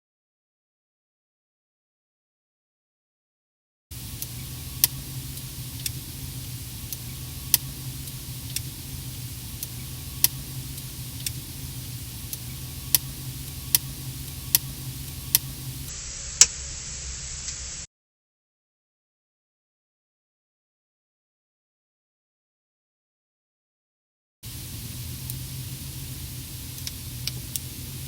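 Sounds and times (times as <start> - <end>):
car low hum: 4.0 - 15.9.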